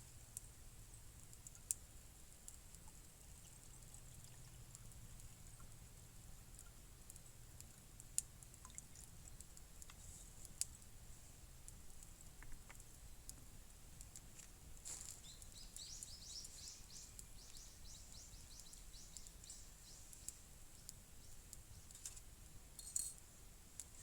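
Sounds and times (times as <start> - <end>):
faint scattered clicks: 6.6 - 10.9, 11.6 - 17.7, 18.5 - 24.0.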